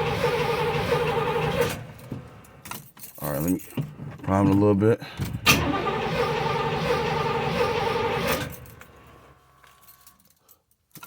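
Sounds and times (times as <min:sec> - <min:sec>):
fuel pump whirring: 0:00.0 - 0:02.7, 0:05.2 - 0:09.8.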